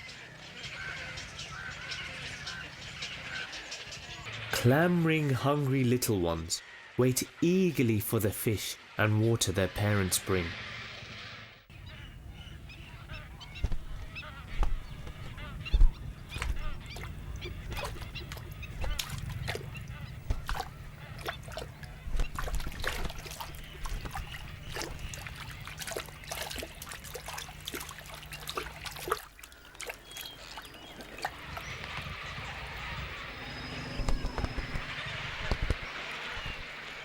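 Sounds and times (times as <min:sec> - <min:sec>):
water birds honking: 0:00.0 - 0:11.0, 0:11.6 - 0:37.0
low steady hum: 0:11.7 - 0:37.0.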